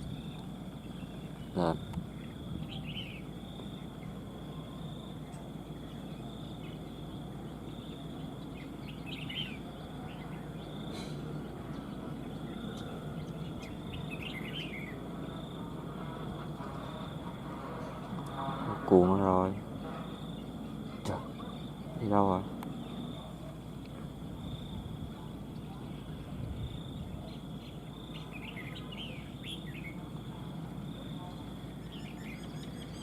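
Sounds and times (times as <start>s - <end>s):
bird chirping: 0.0s - 15.4s, 25.5s - 30.1s, 31.2s - 33.0s
insect trilling: 1.3s - 5.2s.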